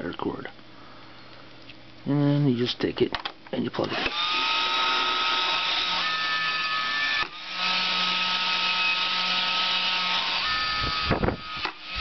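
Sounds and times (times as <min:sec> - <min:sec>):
hair dryer motor whirring: 0:03.9 - 0:12.0.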